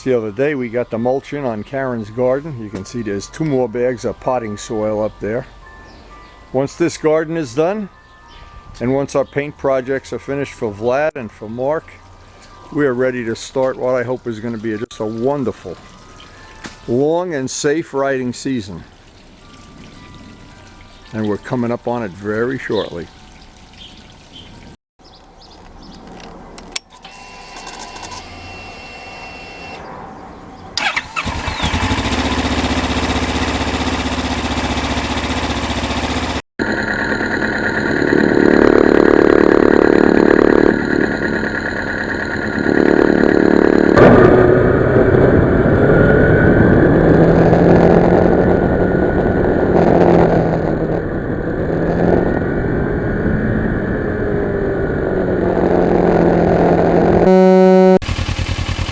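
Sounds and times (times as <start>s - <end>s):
motorcycle engine revving: 30.8s - 58.9s.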